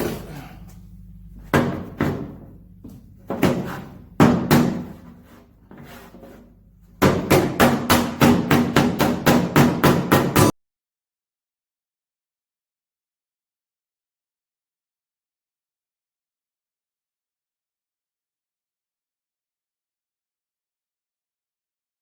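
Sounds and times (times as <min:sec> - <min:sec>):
hammer striking sheet metal: 0:01.4 - 0:02.5, 0:03.3 - 0:05.2, 0:07.0 - 0:10.5.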